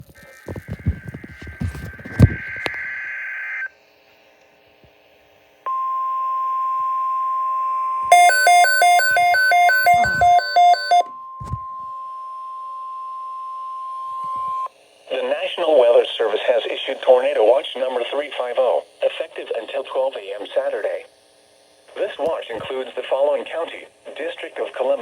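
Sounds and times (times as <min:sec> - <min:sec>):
steady warning alarm tone: 0:05.7 - 0:14.7
rapidly pulsing electronic beeping: 0:08.1 - 0:11.1.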